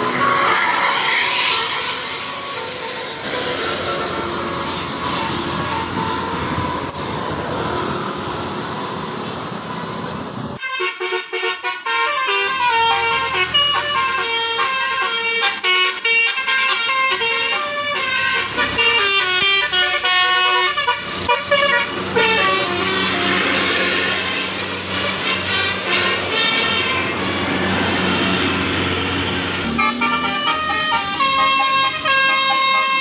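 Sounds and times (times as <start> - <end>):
bus engine and road noise: 0.0 - 33.0
multi-note horn melody: 29.6 - 33.0.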